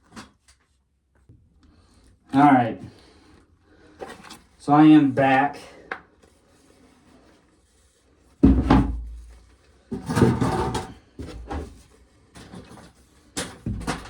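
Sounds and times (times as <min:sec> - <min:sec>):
plastic tub rustling and scraping: 0:06.4 - 0:14.0.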